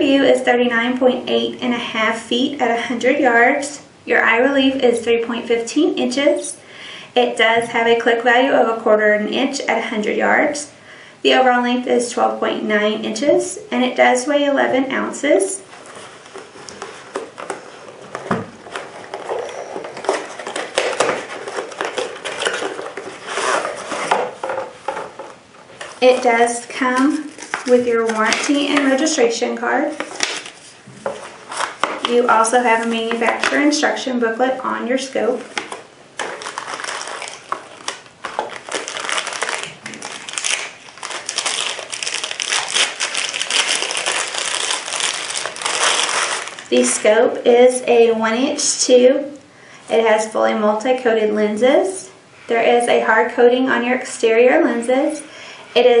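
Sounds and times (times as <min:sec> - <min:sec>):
packaging crinkling: 0:15.7 - 0:29.0, 0:29.9 - 0:33.6, 0:35.4 - 0:46.7
cardboard and paper rustling: 0:15.7 - 0:29.1, 0:29.9 - 0:33.7, 0:35.3 - 0:46.7.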